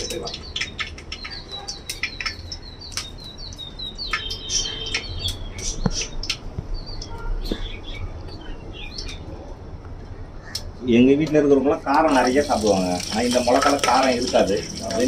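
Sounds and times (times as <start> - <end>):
spices crackling in hot oil: 0.0 - 6.4, 11.9 - 15.0
bird chirping: 0.0 - 9.5.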